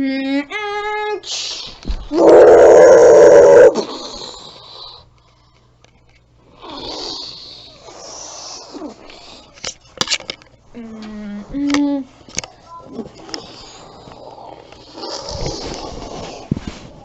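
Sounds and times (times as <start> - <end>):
bear roar: 2.1 - 3.9.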